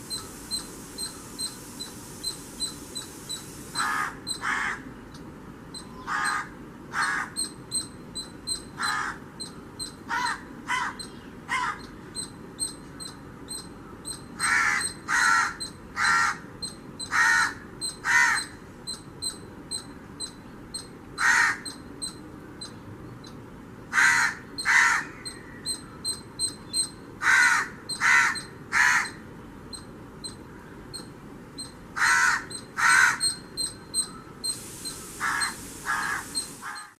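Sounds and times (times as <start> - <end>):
crow cawing: 3.8 - 4.8, 6.0 - 7.4, 8.8 - 9.2, 10.1 - 11.8, 14.4 - 16.4, 17.1 - 18.6, 21.2 - 21.8, 23.9 - 25.7, 27.2 - 29.2, 32.0 - 33.4, 35.2 - 36.9.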